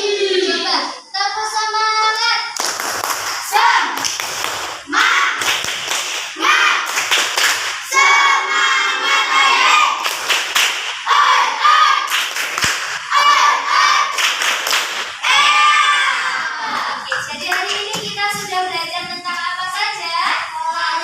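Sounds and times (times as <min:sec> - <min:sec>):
hand clapping: 0:02.6 - 0:07.9, 0:10.0 - 0:11.0, 0:12.1 - 0:13.2, 0:13.8 - 0:15.2, 0:16.7 - 0:18.6
children singing together: 0:07.8 - 0:10.0, 0:11.0 - 0:12.1, 0:13.1 - 0:14.2.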